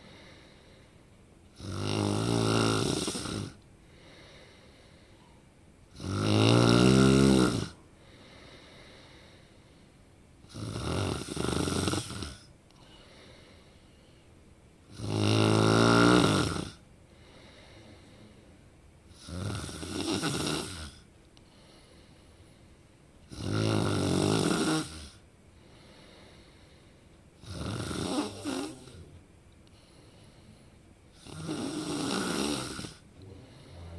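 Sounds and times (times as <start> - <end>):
person snoring: 1.6 - 4.7, 5.9 - 9.3, 10.5 - 12.5, 14.9 - 18.1, 19.1 - 21.0, 23.3 - 25.2, 27.4 - 29.2, 30.3 - 33.9.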